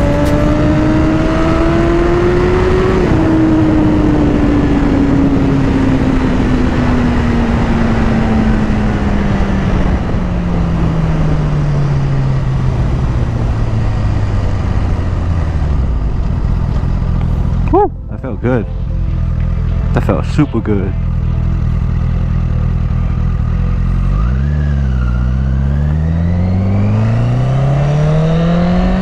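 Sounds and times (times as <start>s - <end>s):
motorcycle engine revving: 0.0s - 29.0s.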